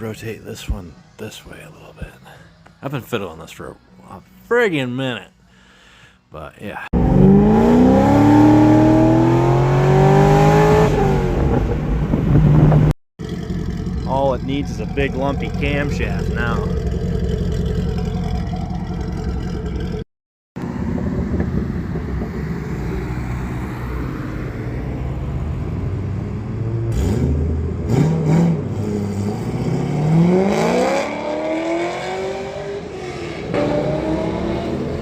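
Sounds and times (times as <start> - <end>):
car engine revving: 7.0 - 20.0, 20.6 - 35.0.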